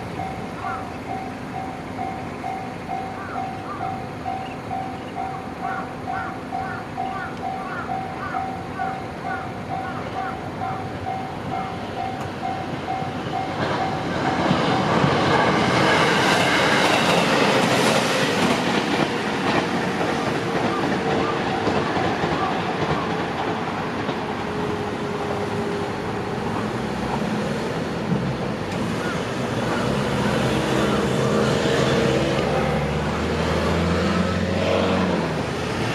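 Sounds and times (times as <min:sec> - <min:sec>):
crossing warning bell ringing: 0:00.0 - 0:17.4, 0:20.0 - 0:23.2
train rail rumble and clatter: 0:00.0 - 0:35.9.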